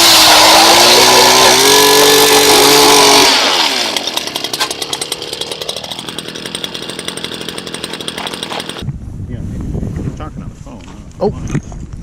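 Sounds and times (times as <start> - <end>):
ice auger motor winding down: 0.0 - 8.8.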